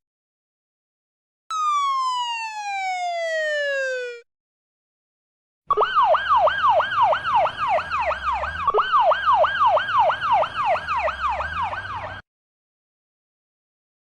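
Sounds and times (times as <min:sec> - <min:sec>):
electronic siren fast yelp: 0:01.5 - 0:04.2, 0:05.7 - 0:12.2.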